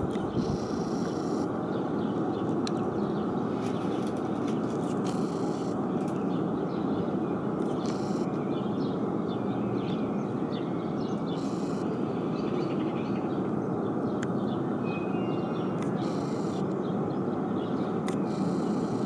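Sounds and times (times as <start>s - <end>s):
small birds chirping: 0.2s - 14.6s.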